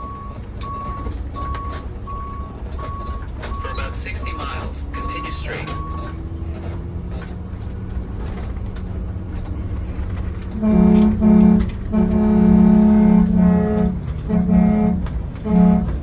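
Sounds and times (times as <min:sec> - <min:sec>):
engine and road drone: 0:00.0 - 0:16.0
air horn blasts: 0:10.5 - 0:16.0.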